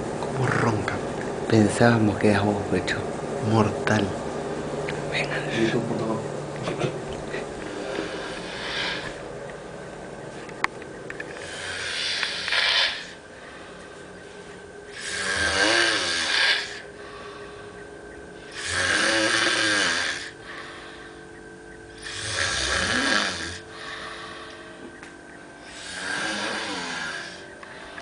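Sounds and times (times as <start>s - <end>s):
person snoring: 7.6s - 9.2s, 11.4s - 13.2s, 14.9s - 17.5s, 18.4s - 21.1s, 22.0s - 24.6s, 25.6s - 27.4s.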